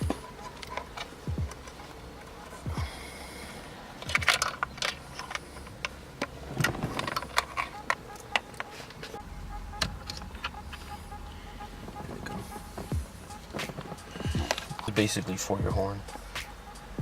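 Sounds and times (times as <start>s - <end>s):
dull thuds: 0.0s - 0.4s, 1.2s - 1.6s, 2.6s - 3.0s, 11.8s - 14.9s
tools clicking and rattling: 0.0s - 2.9s, 4.0s - 9.2s, 11.8s - 15.2s.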